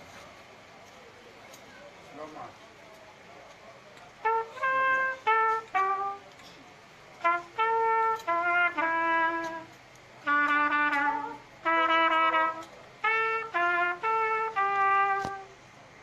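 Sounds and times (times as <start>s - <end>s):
brass horn playing a march: 4.1s - 6.5s, 7.1s - 15.6s.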